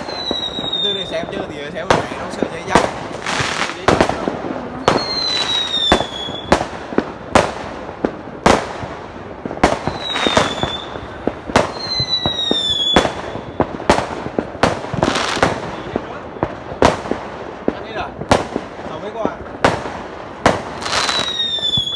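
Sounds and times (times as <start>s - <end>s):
whistling firework shells: 0.0s - 1.4s, 4.8s - 6.7s, 9.8s - 11.0s, 11.6s - 13.8s, 20.9s - 21.9s
fireworks bangs: 0.0s - 21.9s
fireworks crackle: 0.0s - 21.9s.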